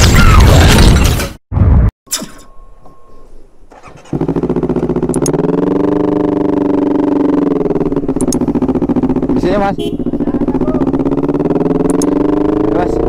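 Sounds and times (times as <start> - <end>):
motorcycle engine running: 3.7 - 13.0.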